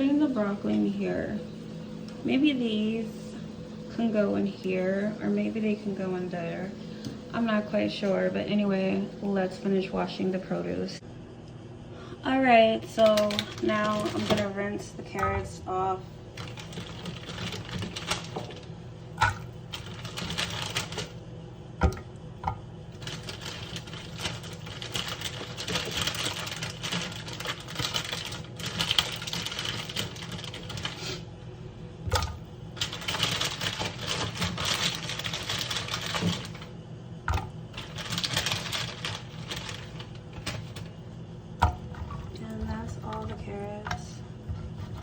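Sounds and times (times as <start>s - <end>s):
steady low hum: 0.0s - 45.0s
kitchen tap running: 12.8s - 21.2s, 21.8s - 31.3s, 32.0s - 45.0s
carrots knocking in sink: 19.2s - 19.5s, 21.8s - 22.6s, 37.3s - 37.6s.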